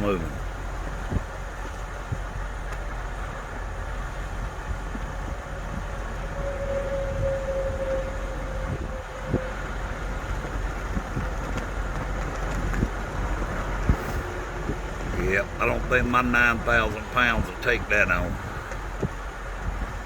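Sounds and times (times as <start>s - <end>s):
truck road and engine noise: 0.0s - 20.0s
faint held tone: 6.2s - 10.2s.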